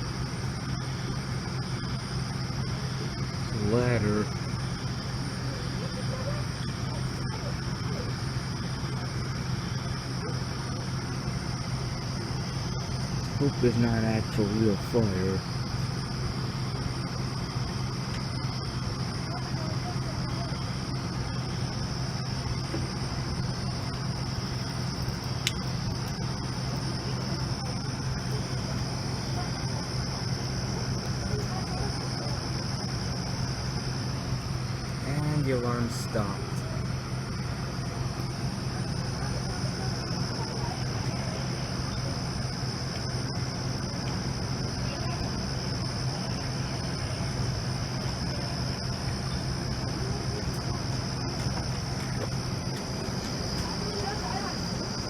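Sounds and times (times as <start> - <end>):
crickets chirping: 0.0 - 55.0
fire truck engines idling: 0.0 - 55.0.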